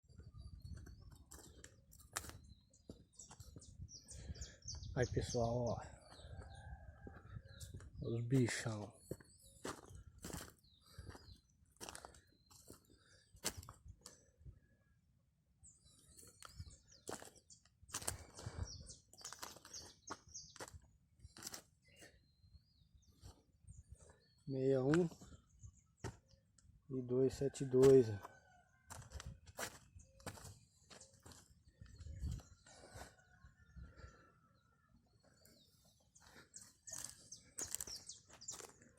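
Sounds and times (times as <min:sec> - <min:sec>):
small birds chirping: 0:00.0 - 0:38.9
faint bird chirps: 0:28.2 - 0:38.8.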